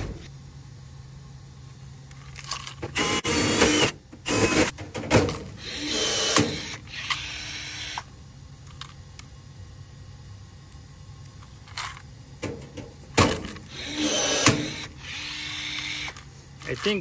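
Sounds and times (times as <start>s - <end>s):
rivet gun motor running: 5.6s - 8.1s, 13.6s - 17.0s.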